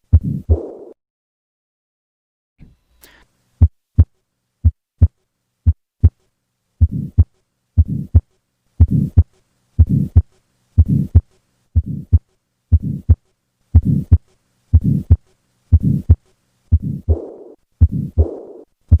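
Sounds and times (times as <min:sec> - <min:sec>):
heartbeat lub-dub: 0:00.0 - 0:01.0, 0:03.6 - 0:06.2, 0:06.8 - 0:13.2, 0:13.8 - 0:19.0
harsh heart murmur: 0:00.1 - 0:00.9, 0:06.8 - 0:08.2, 0:08.8 - 0:09.2, 0:09.8 - 0:10.2, 0:10.8 - 0:11.2, 0:11.8 - 0:13.2, 0:13.8 - 0:14.2, 0:14.8 - 0:19.0.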